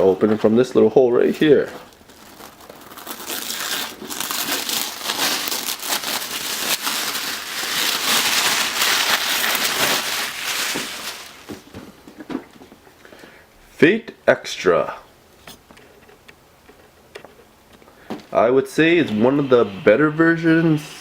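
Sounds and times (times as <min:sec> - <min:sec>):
packaging tearing and crinkling: 0:01.4 - 0:11.7.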